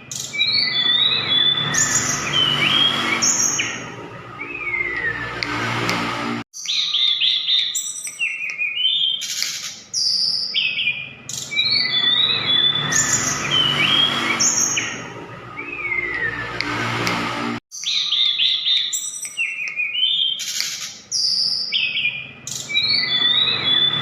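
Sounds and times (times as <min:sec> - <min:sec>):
songbird whistling high notes: 0:10.0 - 0:16.4, 0:21.2 - 0:24.0.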